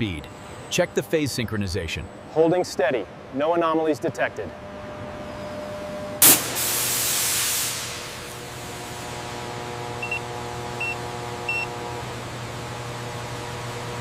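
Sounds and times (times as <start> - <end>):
machine hum with tones: 4.3 - 7.1, 7.8 - 14.0
hiss of escaping air: 6.2 - 8.4.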